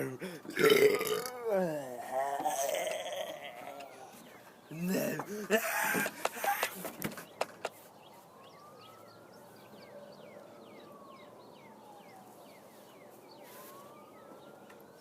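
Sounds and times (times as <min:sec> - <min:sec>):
faint siren wailing: 0:00.0 - 0:15.0
bird chirping: 0:03.4 - 0:15.0.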